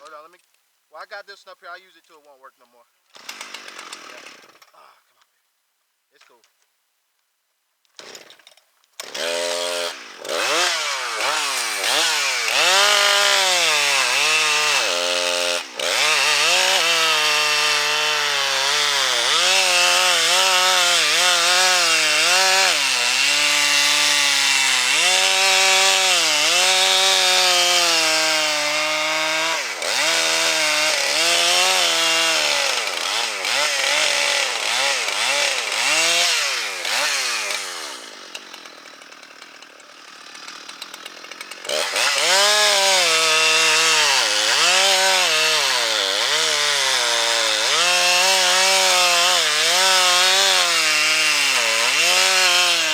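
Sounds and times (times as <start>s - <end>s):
chainsaw cutting wood: 3.1s - 4.9s, 7.9s - 52.9s.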